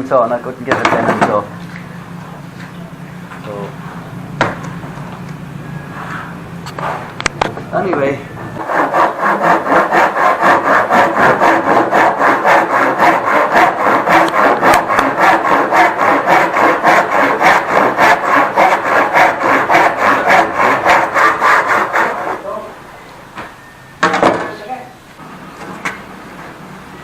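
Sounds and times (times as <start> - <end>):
handsaw cutting wood: 8.6 - 22.6.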